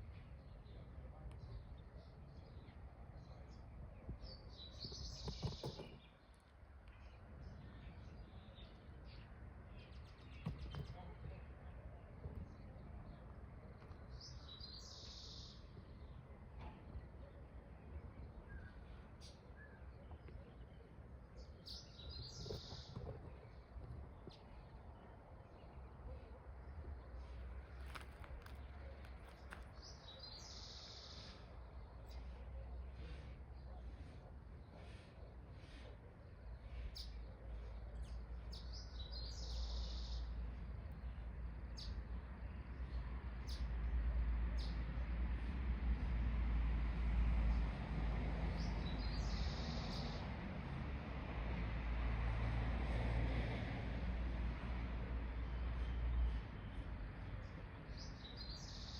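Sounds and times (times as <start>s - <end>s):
birds chirping: 0.0s - 43.8s.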